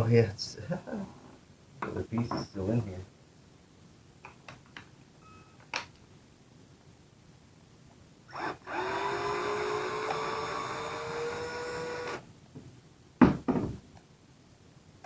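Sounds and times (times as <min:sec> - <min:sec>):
power tool motor whine: 0:08.3 - 0:12.2.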